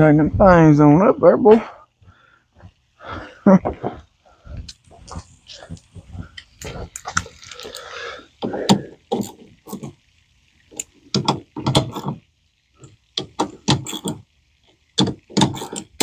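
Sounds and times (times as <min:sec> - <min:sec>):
knocks and clunks of hand work: 0:11.1 - 0:12.2, 0:13.2 - 0:14.2, 0:15.0 - 0:16.0.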